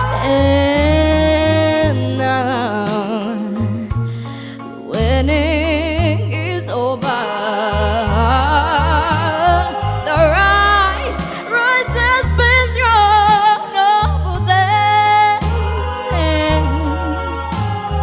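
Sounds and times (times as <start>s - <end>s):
instrumental backing track: 0.0s - 18.0s.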